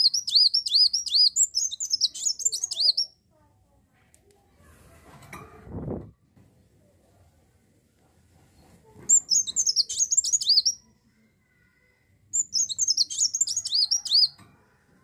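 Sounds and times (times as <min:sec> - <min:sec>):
bird twittering song: 0:00.0 - 0:03.2, 0:09.1 - 0:10.8, 0:12.3 - 0:14.4.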